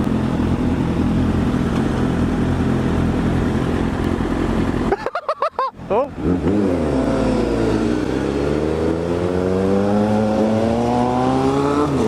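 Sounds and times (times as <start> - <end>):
motorcycle engine accelerating: 6.1 - 12.0.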